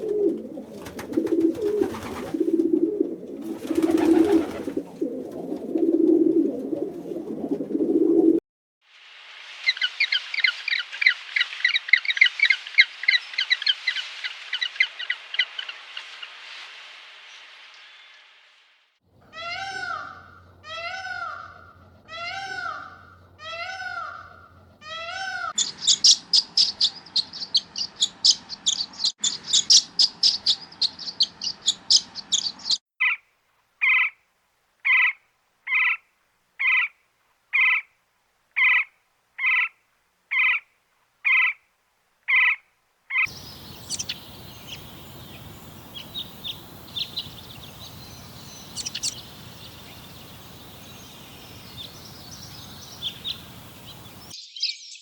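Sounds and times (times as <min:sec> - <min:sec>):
background hiss: 0:00.0 - 0:08.2, 0:08.9 - 0:19.3, 0:33.3 - 0:54.4
bird calls: 0:19.2 - 0:33.2, 0:42.3 - 0:55.0
rapid high bird chirping: 0:43.2 - 0:54.8.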